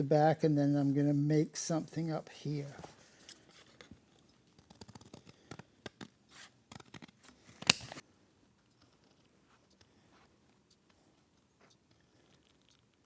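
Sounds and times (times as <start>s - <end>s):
scissors cutting cardboard: 3.3s - 8.0s.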